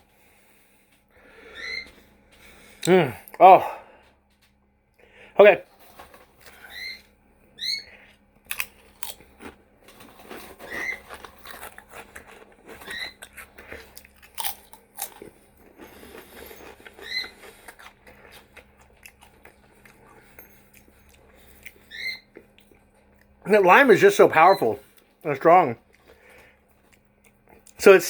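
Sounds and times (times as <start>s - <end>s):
crunching tortilla chips: 8.4s - 23.4s.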